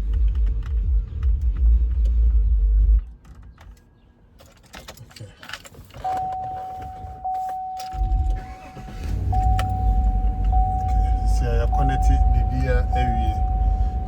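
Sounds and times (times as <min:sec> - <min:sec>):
keys jangling: 0:03.2 - 0:08.1
low rumble: 0:09.0 - 0:14.0
electronic chime tone: 0:09.3 - 0:14.0.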